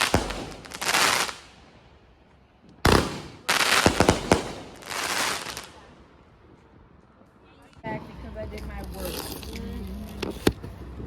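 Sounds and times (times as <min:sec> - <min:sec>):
fireworks bangs and cracks: 0:00.0 - 0:01.6, 0:02.7 - 0:05.9.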